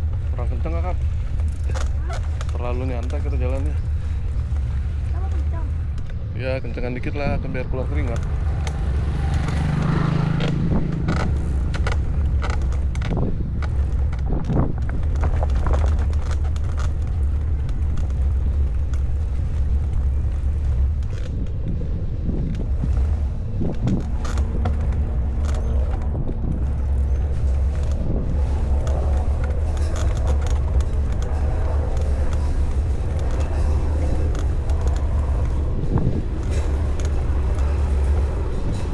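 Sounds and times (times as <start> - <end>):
wind rumble on microphone: 0.0 - 38.9
small clicks and knocks: 7.9 - 21.8, 22.4 - 38.9.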